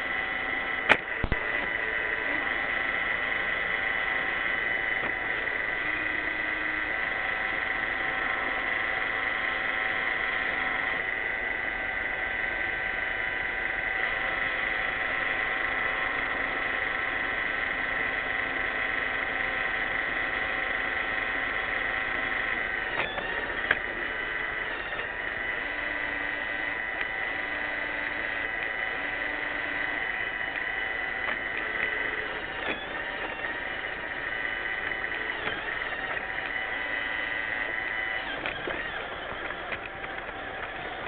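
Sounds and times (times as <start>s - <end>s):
high steady whine: 0.0s - 41.0s
robot vacuum whirring: 0.0s - 41.0s
sharp click: 0.8s - 1.5s, 37.4s - 41.0s.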